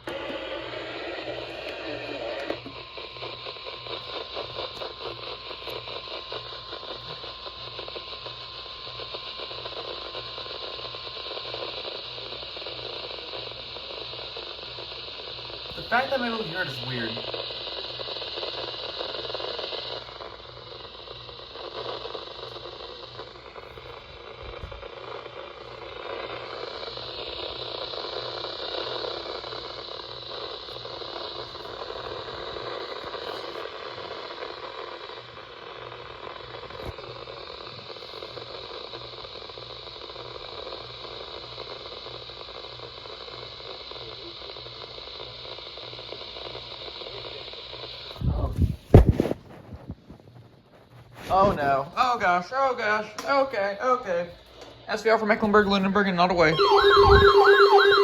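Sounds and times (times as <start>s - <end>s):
radio static hiss: 0.0s - 50.2s, 51.0s - 58.0s
faint low pulsing: 56.5s - 58.0s.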